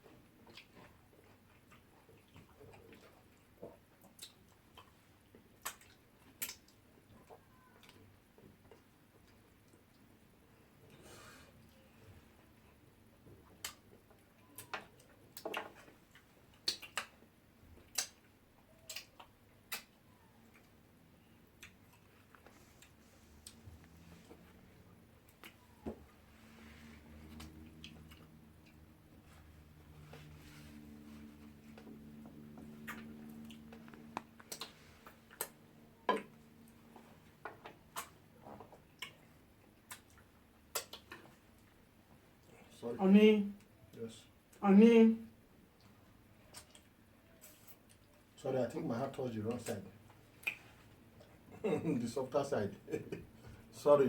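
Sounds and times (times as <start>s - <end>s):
wet mouth smacks eating: 5.6s - 6.8s, 13.5s - 13.8s, 14.6s - 17.2s, 17.8s - 20.7s, 32.8s - 36.4s, 37.9s - 39.2s, 39.8s - 41.4s, 46.4s - 48.1s, 50.4s - 50.7s.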